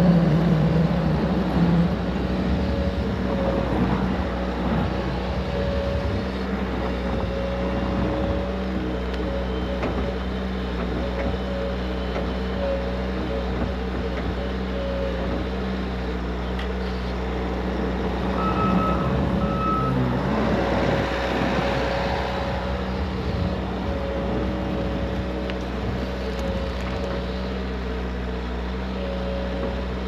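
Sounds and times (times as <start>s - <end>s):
farm machine engine running: 0.0s - 30.0s
short high beeps: 18.4s - 20.0s.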